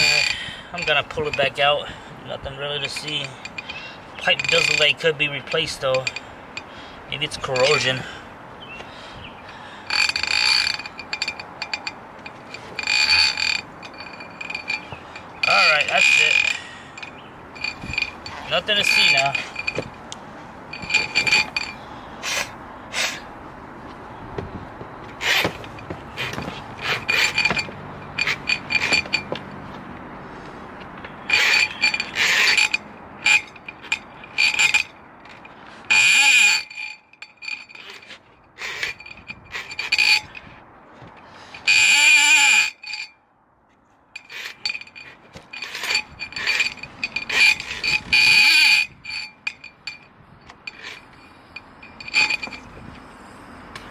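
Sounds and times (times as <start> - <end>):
squeaky clinking cable noises: 0.0 - 30.1, 30.8 - 43.2, 44.1 - 53.1
drain snake rattling whir: 20.7 - 23.3, 25.2 - 29.4, 31.2 - 38.0, 50.6 - 52.8.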